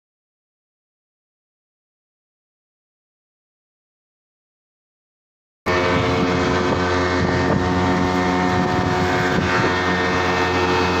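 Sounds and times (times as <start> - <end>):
boat engine running: 5.7 - 11.0
mechanical whine: 5.7 - 11.0.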